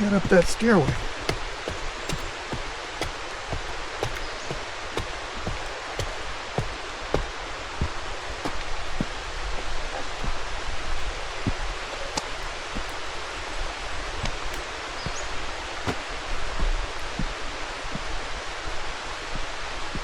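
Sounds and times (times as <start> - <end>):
sharp taps: 0.0 - 9.2, 15.9 - 16.2
rain hissing: 0.0 - 20.0
running creek water: 0.0 - 20.0.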